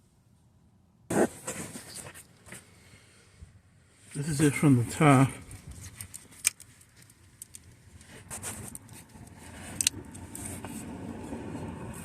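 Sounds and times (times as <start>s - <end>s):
sharp clicks and light knocks: 5.6s - 10.4s.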